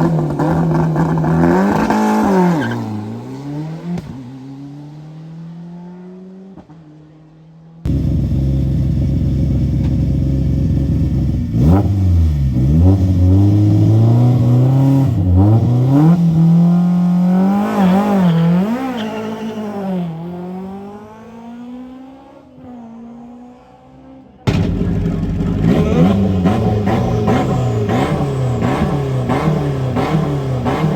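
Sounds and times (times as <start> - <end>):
rally car engine revving hard: 0.0 - 4.2, 11.5 - 21.6, 24.5 - 30.9
car pulling away: 24.4 - 30.9.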